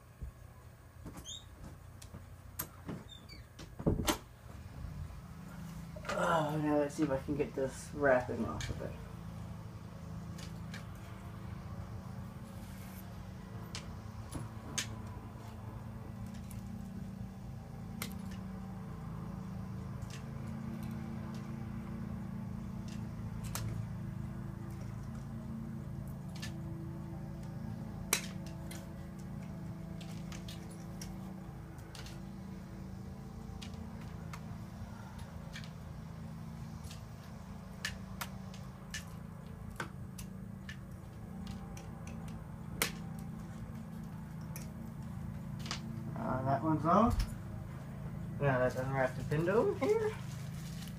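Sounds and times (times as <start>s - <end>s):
steady low hum: 0.0s - 50.9s
plastic wrapping crinkling: 49.8s - 50.9s.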